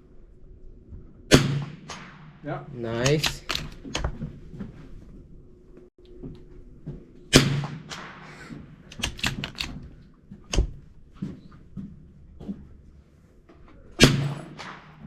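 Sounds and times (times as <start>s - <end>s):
rifle shot: 1.3s - 4.0s, 7.3s - 9.8s, 14.0s - 15.0s
metallic clicks from rifle handling: 3.0s - 4.2s, 8.9s - 10.7s.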